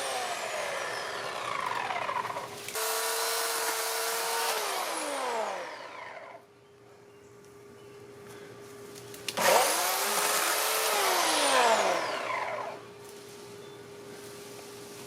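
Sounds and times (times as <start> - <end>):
chainsaw revving: 0.0 - 6.4, 9.4 - 12.9.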